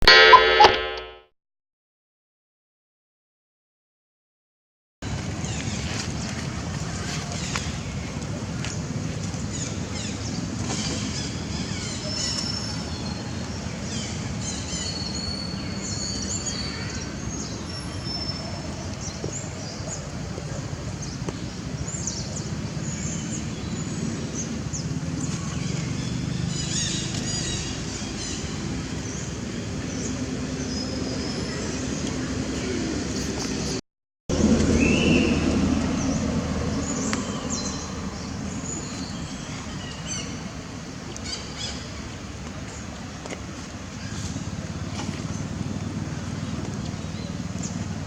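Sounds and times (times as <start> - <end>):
low mechanical rumble: 24.1 - 41.4.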